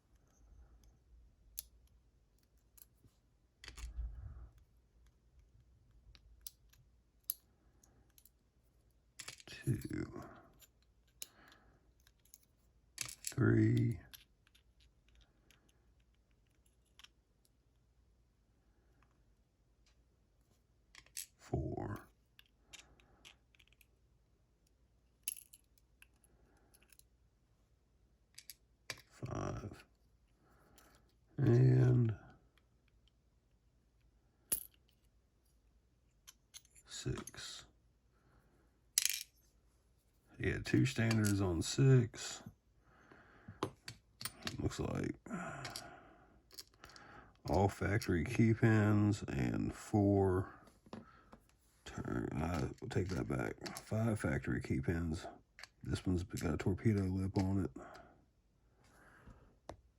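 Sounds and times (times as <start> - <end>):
metallic clicks of lock parts: 3.6 - 4.0, 5.0 - 8.4, 12.0 - 17.6, 20.9 - 21.5, 22.3 - 24.0, 24.6 - 27.2, 28.3 - 29.2, 40.9 - 41.4, 55.5 - 57.6.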